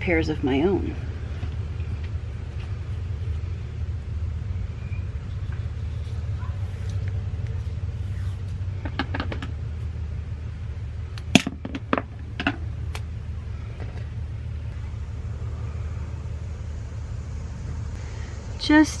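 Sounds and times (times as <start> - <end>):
steady low hum: 0.0 - 19.0
rustles: 0.9 - 3.8, 4.7 - 10.0.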